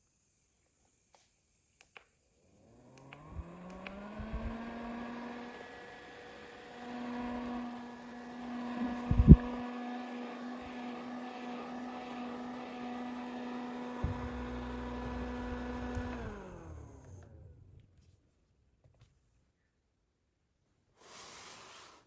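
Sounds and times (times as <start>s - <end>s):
electric fan motor humming: 2.4s - 17.6s.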